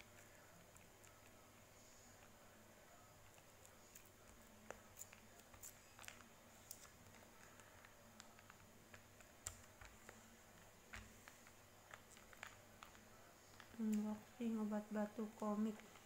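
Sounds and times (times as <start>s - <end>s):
small clicks and taps: 3.3s - 14.0s.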